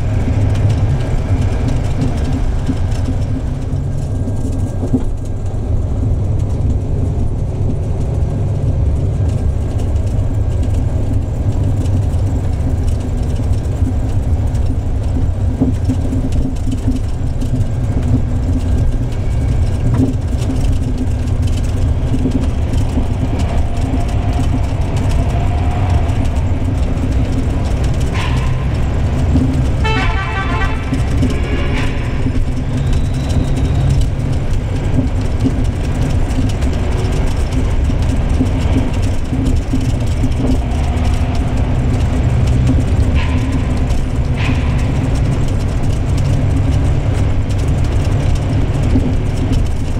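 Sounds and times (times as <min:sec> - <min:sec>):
bus engine deep rumble: 0:00.0 - 0:49.9
rapidly pulsing horn: 0:28.0 - 0:34.0.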